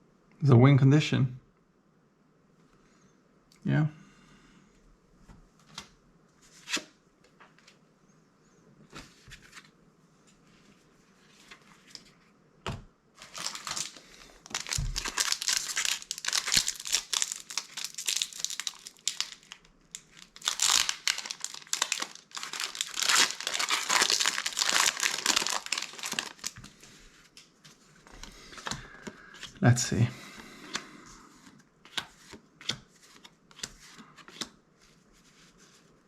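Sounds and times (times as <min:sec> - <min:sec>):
foil wrapper crinkling: 0:13.2 - 0:26.7.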